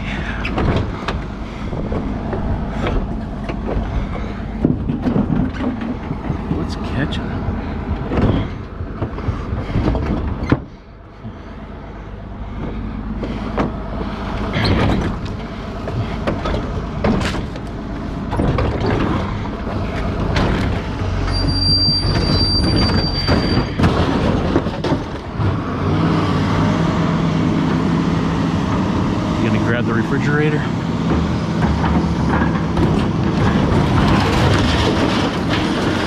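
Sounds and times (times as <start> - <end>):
engine running: 0.0 - 36.0
high squeal: 21.2 - 23.8
metal scrap clanking: 31.1 - 36.0.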